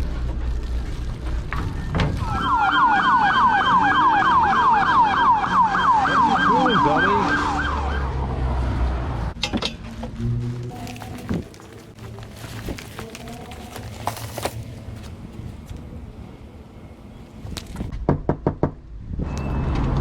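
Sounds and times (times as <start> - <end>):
emergency siren yelping: 2.2 - 8.5.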